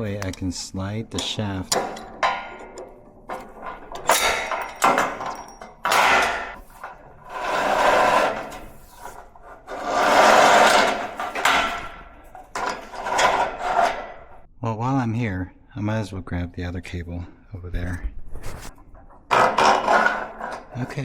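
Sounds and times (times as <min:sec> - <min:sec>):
metal knocks: 0:01.1 - 0:07.2, 0:09.9 - 0:14.4
metal scraping slides: 0:01.2 - 0:14.5, 0:18.4 - 0:21.0.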